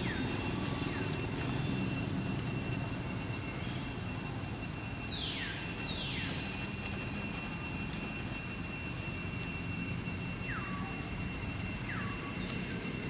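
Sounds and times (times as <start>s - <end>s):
high-pitched buzzing drone: 0.0s - 13.0s.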